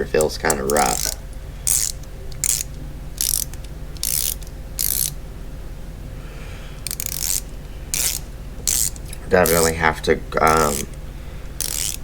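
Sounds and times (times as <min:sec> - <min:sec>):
ratchet wrench clicking: 0:00.2 - 0:05.2, 0:06.8 - 0:09.8, 0:10.4 - 0:11.0, 0:11.6 - 0:12.0.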